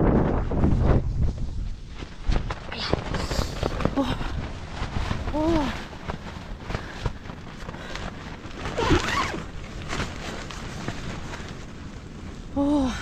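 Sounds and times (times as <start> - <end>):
wind buffeting microphone: 0.0 - 13.0
woman's voice: 12.6 - 13.0.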